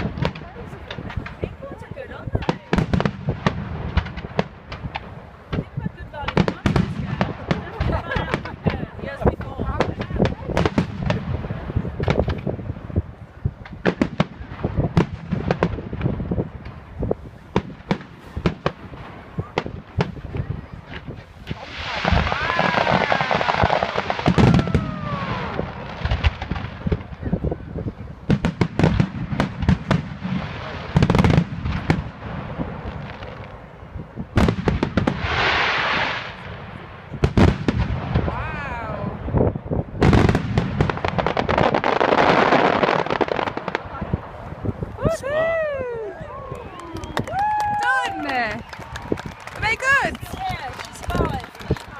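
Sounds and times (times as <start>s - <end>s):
fireworks bangs and cracks: 0.0s - 51.9s
fireworks hissing: 16.7s - 26.7s, 34.9s - 36.4s.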